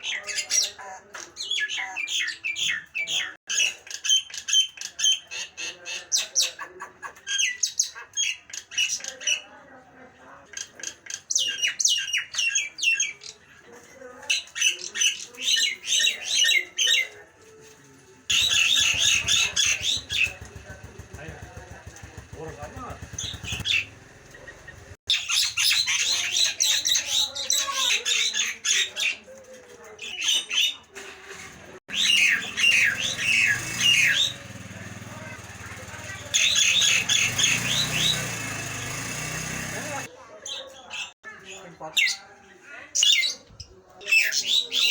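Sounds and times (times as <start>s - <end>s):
myna whistles and squawks: 31.9s - 34.4s.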